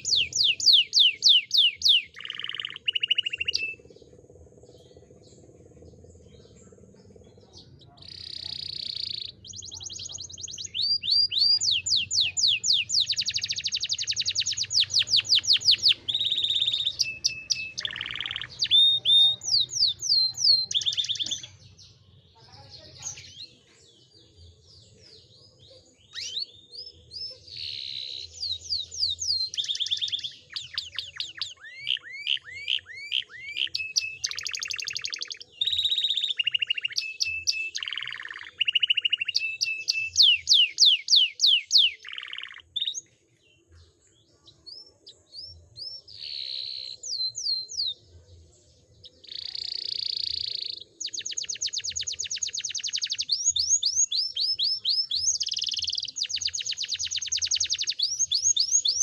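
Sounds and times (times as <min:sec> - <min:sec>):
canary singing: 0:00.0 - 0:48.1, 0:49.0 - 0:59.0.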